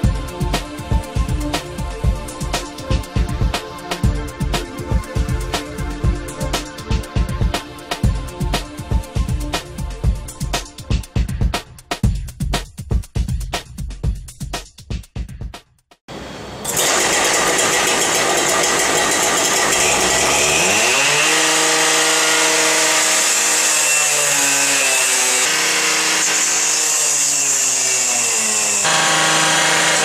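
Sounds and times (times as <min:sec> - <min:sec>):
small motor running: 0:16.7 - 0:24.1, 0:25.1 - 0:30.0.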